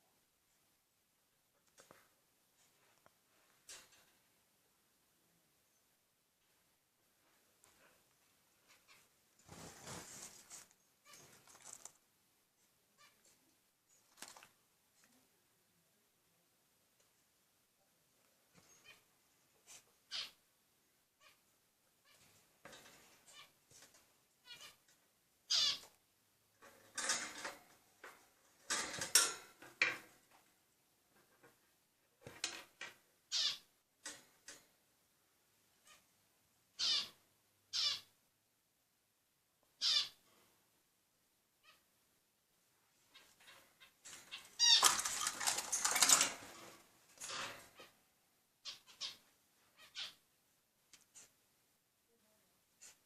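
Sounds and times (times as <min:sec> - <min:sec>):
birds chirping and squawking: 0:20.1 - 0:20.4, 0:25.5 - 0:25.9, 0:33.3 - 0:33.7, 0:36.8 - 0:38.1, 0:39.8 - 0:40.2, 0:43.1 - 0:46.6, 0:48.6 - 0:49.2, 0:49.8 - 0:50.2
bird squawking: 0:39.8 - 0:40.2.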